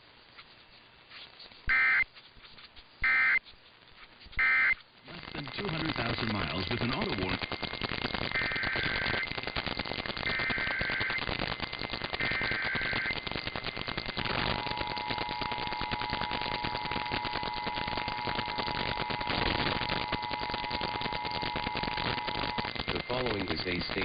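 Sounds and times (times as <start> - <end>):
radio static crackling: 0.0 - 24.0
screeching data bursts: 1.7 - 2.0, 3.0 - 3.4, 4.3 - 24.0.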